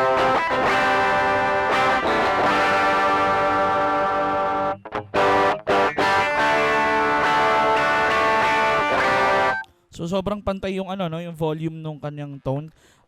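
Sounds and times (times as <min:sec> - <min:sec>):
overdriven electric guitar chords: 0:00.0 - 0:09.6.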